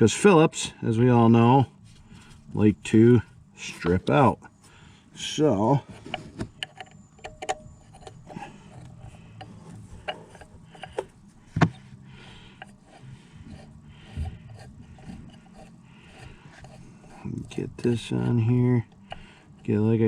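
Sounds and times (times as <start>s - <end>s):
metal bolts and hex key clinking: 6.5s - 11.0s.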